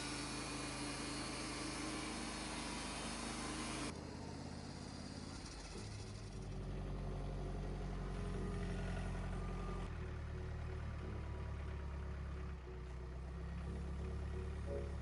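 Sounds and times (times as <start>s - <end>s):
engine running: 0.0s - 15.0s.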